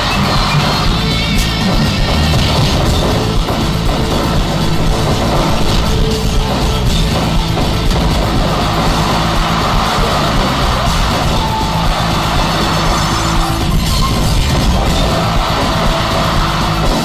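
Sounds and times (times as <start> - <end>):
loud music: 0.0 - 17.0.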